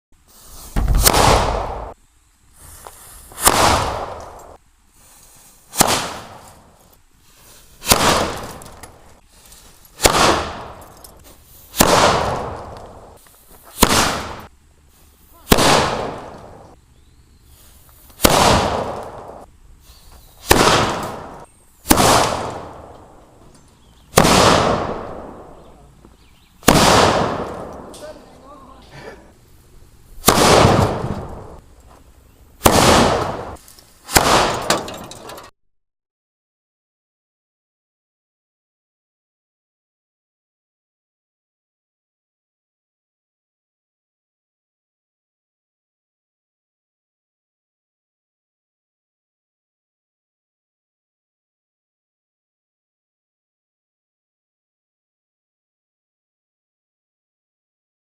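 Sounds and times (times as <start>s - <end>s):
cannons firing with echo: 0.8s - 2.0s, 3.4s - 4.6s, 5.8s - 6.4s, 7.8s - 8.9s, 10.0s - 10.9s, 11.8s - 13.1s, 13.8s - 14.5s, 15.5s - 16.7s, 18.2s - 19.4s, 20.5s - 23.1s, 24.1s - 25.8s, 26.6s - 28.2s, 30.2s - 31.6s, 32.6s - 35.0s.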